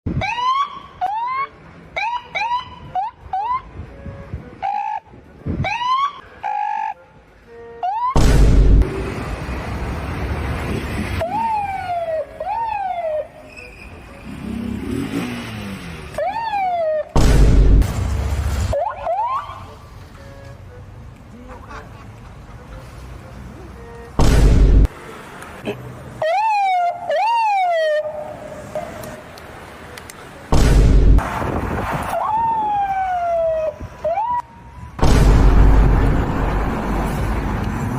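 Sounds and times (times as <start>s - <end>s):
police siren whoops: 0.2s - 3.7s, 4.6s - 7.0s, 11.2s - 13.4s, 16.2s - 17.2s, 18.7s - 19.7s, 26.2s - 28.3s, 32.2s - 34.5s
loud rushing noise: 30.5s - 32.2s, 35.0s - 37.9s.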